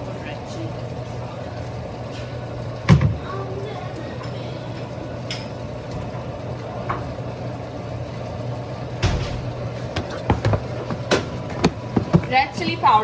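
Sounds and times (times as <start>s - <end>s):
kitchen appliance humming: 0.0s - 13.0s
utensils clattering: 9.0s - 12.6s.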